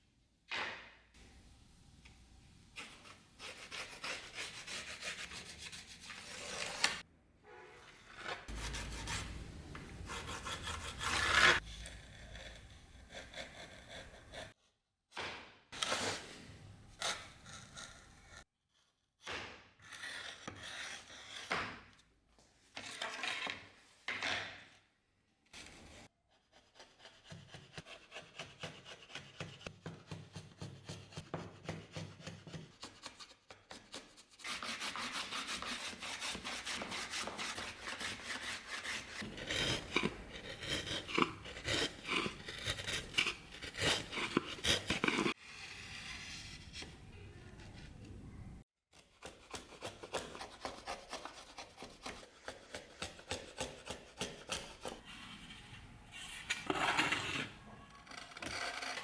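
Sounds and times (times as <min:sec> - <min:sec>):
file scraping back and forth: 0:02.8 - 0:07.1, 0:07.8 - 0:14.6, 0:16.9 - 0:18.9, 0:19.7 - 0:22.0, 0:25.6 - 0:47.0, 0:48.9 - 0:59.0.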